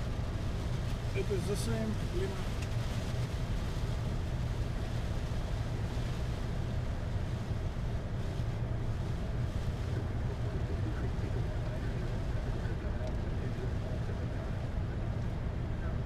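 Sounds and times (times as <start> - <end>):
jet engines rumbling: 3.4 - 16.0.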